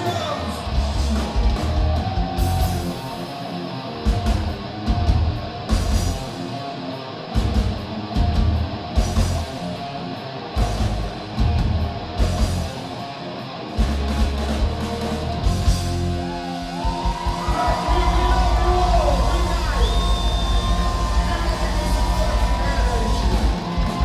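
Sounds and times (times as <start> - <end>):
distorted electric guitar: 0.0 - 24.0
heavy metal band playing: 0.0 - 24.0
loud band hits: 13.8 - 24.0.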